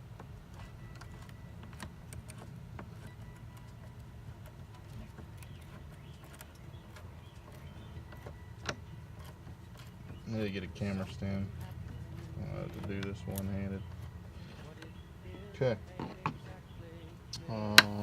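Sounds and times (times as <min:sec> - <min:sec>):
plastic and metal clicks: 0:00.0 - 0:18.0
steady low hum: 0:00.0 - 0:18.0.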